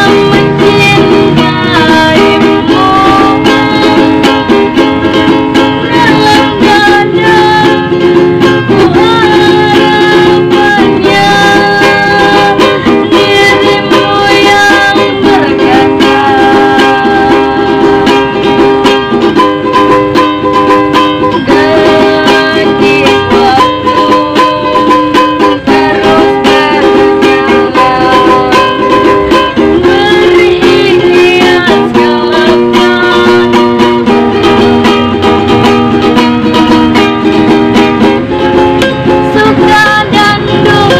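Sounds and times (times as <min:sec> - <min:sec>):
ukulele strumming chords: 0:00.0 - 0:40.9.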